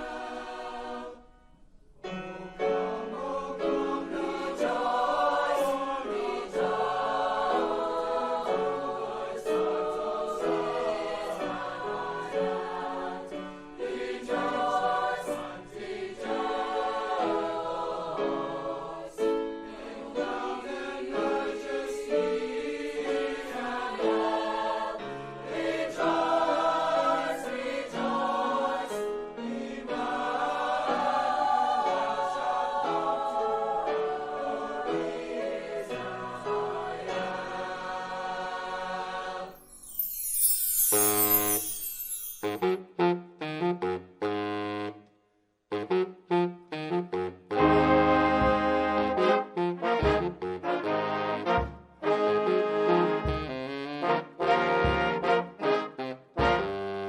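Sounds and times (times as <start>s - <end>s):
choir singing: 0.0s - 1.4s, 2.1s - 42.7s.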